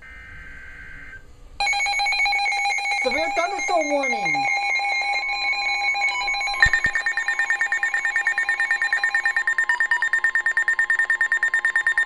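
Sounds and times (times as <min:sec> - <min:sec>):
high electronic alert tone: 0:01.6 - 0:12.0
rapid pulsing electronic beeping: 0:01.7 - 0:12.0.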